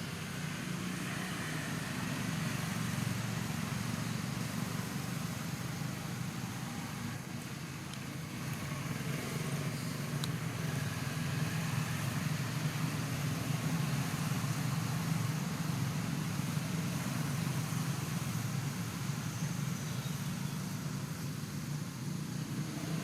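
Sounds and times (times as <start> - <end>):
vehicle engine rumbling: 0.0 - 23.0.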